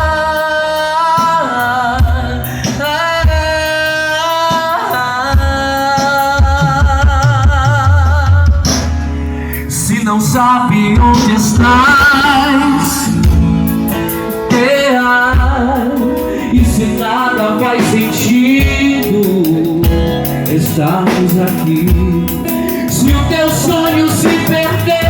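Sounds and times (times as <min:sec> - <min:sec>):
steady drum beat: 0:00.0 - 0:09.2, 0:10.2 - 0:25.0
bass: 0:00.0 - 0:25.0
guitar: 0:00.0 - 0:25.0
singer with vibrato: 0:09.6 - 0:13.6, 0:14.3 - 0:25.0.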